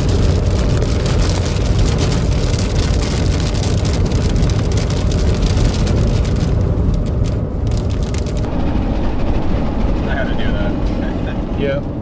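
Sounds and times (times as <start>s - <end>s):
wind and road noise rumble: 0.0s - 12.0s.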